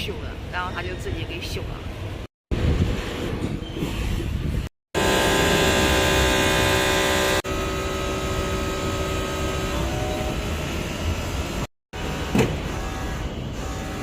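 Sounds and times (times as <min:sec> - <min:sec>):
mechanical hum with pitched tones: 0:05.0 - 0:14.0.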